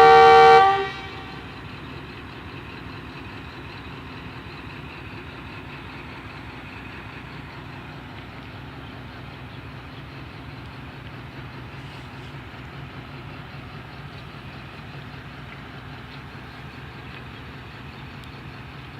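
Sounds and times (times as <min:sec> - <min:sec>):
locomotive horn blast: 0:00.0 - 0:01.6
diesel engine running: 0:00.0 - 0:18.9.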